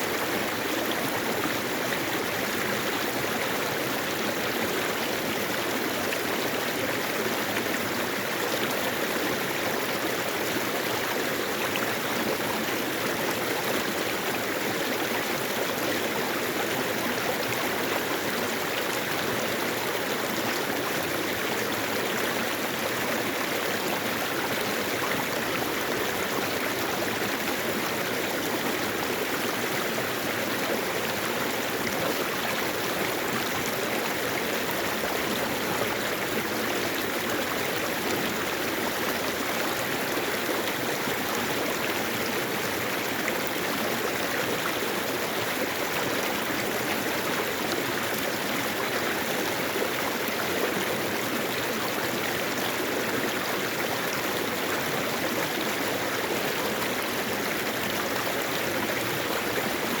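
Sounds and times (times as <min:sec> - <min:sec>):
stream flowing over rocks: 0:00.0 - 1:00.0.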